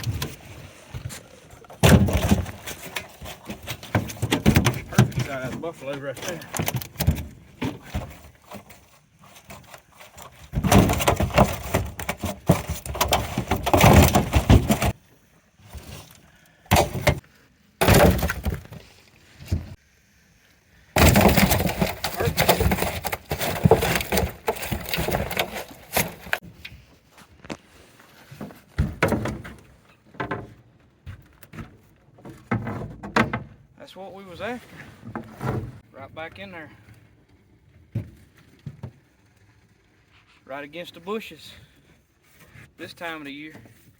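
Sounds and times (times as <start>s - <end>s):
fish flopping and banging in boat: 0.0s - 15.0s, 15.6s - 17.2s, 17.8s - 19.8s, 21.0s - 33.7s.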